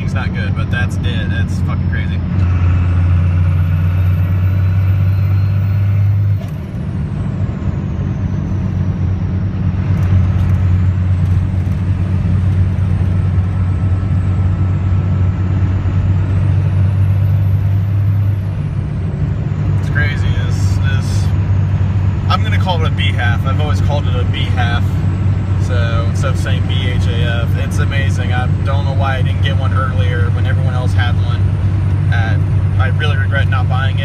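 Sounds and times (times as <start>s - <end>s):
diesel engine running: 0.0s - 34.0s
high turbo whistle: 2.7s - 6.4s.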